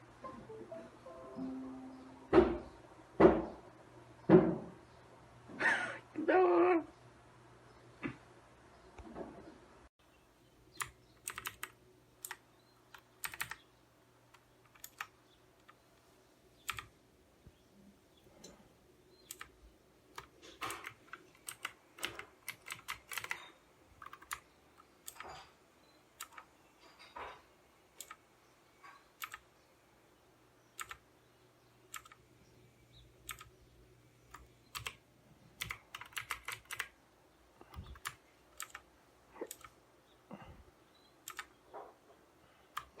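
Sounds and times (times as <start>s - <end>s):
clicky keyboard typing: 10.8s - 13.6s, 14.3s - 15.8s, 16.6s - 16.9s, 19.2s - 25.5s, 26.2s - 26.5s, 28.0s - 28.2s, 29.2s - 29.4s, 30.7s - 31.0s, 31.9s - 32.2s, 33.2s - 33.6s, 34.3s - 35.0s, 35.6s - 37.0s, 37.7s - 39.8s, 41.2s - 41.6s, 42.7s - 43.0s.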